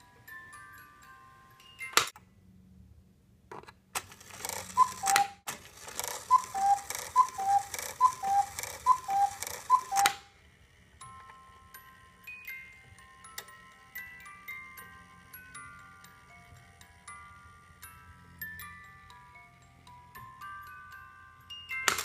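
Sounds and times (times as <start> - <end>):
clock mechanism clicks: 4.0 - 10.2
cuckoo clock calls: 4.4 - 10.4.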